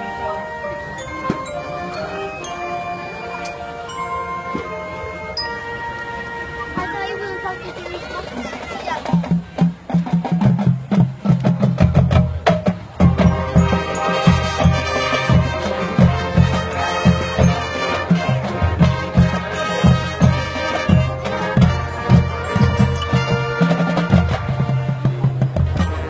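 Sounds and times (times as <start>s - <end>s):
brass and winds chords: 0.0s - 8.3s, 13.0s - 26.0s
drumline beat: 7.7s - 26.0s.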